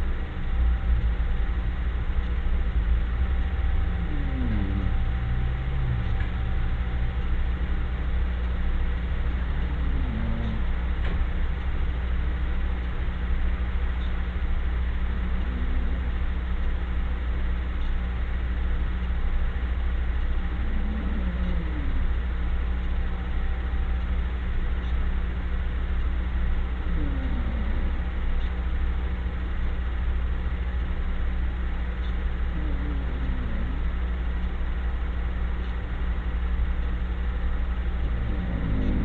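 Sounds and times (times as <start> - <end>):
low droning hum: 0.0 - 39.0
faint snore: 3.3 - 7.0, 9.3 - 10.9, 15.0 - 16.3, 20.4 - 22.2, 26.7 - 28.5, 32.4 - 34.4, 37.8 - 39.0.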